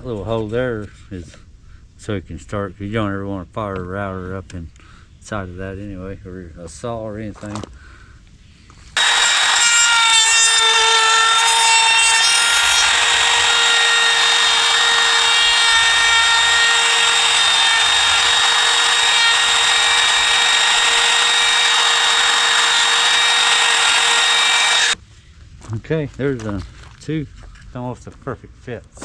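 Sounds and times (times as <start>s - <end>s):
electric router whining: 9.0s - 25.0s
router bit cutting wood: 9.0s - 25.0s.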